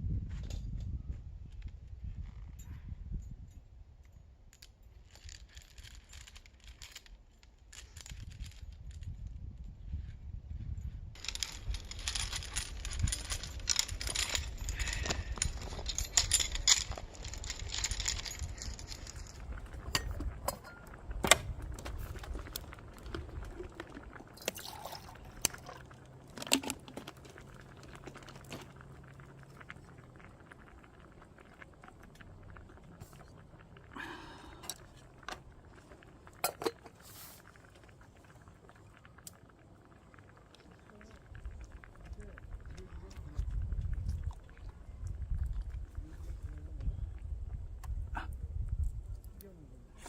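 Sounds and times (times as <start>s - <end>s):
objects rustling and rattling: 4.5s - 9.4s, 11.1s - 46.6s
clinks and knocks: 11.2s - 29.2s, 34.6s - 37.0s.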